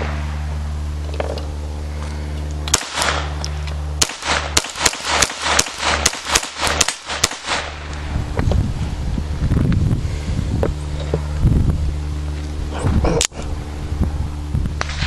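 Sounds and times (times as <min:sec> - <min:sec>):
pistol shots: 0:02.7 - 0:03.4, 0:04.0 - 0:07.8.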